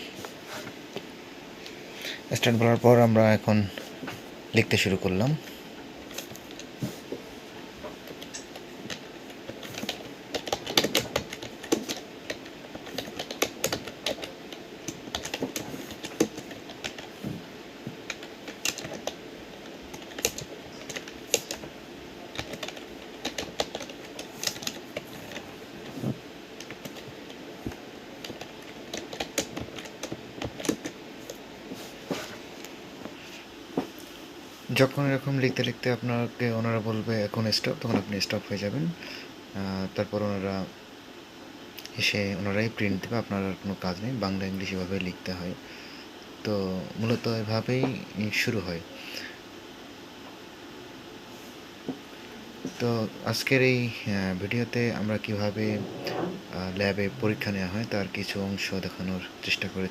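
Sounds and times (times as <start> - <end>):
faint steady hum: 0.0 - 59.9
typing on computer keyboard: 8.1 - 17.2, 18.0 - 21.6, 22.3 - 25.5, 26.6 - 31.0.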